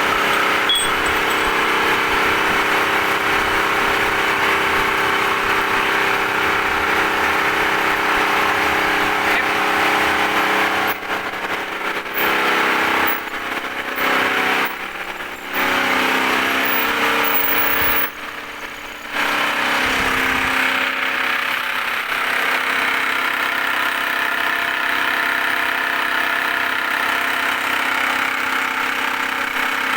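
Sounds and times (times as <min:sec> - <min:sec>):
lathe machine hum: 0:00.0 - 0:17.3.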